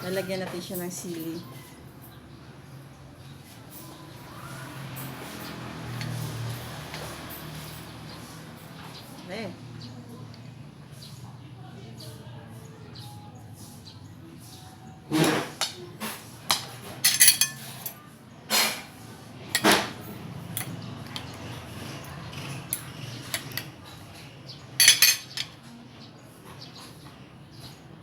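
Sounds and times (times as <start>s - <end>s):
cutlery clinking on plates: 5.2s - 7.7s, 15.1s - 18.9s, 19.6s - 21.5s, 22.5s - 25.7s.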